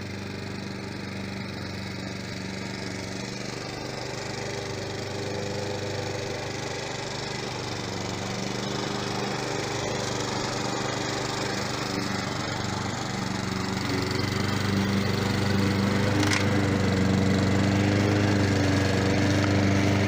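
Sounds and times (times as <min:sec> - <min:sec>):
lawn mower engine hum: 0:00.0 - 0:20.0.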